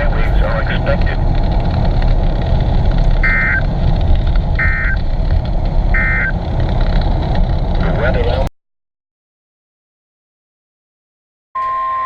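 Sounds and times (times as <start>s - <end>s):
steady hiss and rumble: 0.0s - 8.5s
digital data tone bursts: 3.2s - 3.6s, 4.6s - 5.0s, 6.0s - 6.3s.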